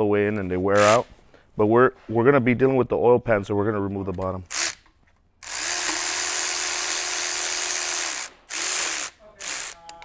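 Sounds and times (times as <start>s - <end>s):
electric power tool whining: 5.4s - 9.8s.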